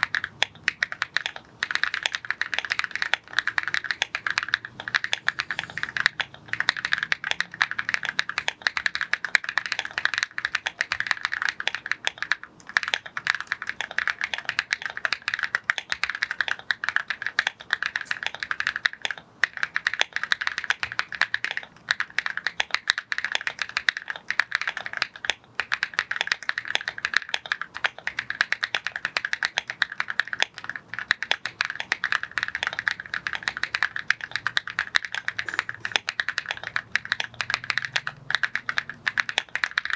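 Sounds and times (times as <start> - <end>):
fast keyboard typing: 0.0 - 39.9.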